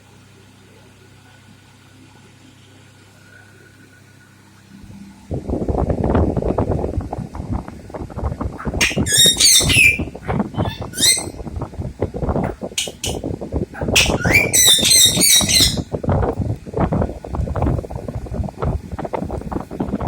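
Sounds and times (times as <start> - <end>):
wind rumbling on microphone: 5.3 - 20.0
parakeets chirping shrilly: 8.6 - 11.4, 12.8 - 13.2, 13.8 - 15.9.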